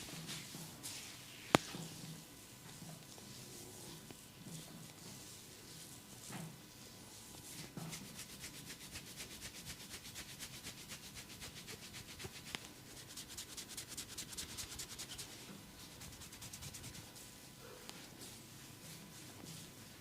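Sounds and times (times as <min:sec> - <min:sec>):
hands rubbing skin: 0:07.6 - 0:17.2.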